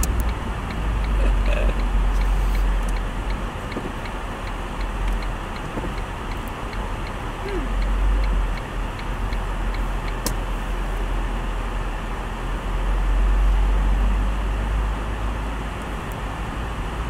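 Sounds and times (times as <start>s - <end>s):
sharp click: 0.0s - 1.2s, 7.8s - 10.4s
low engine rumble in car: 0.0s - 17.0s.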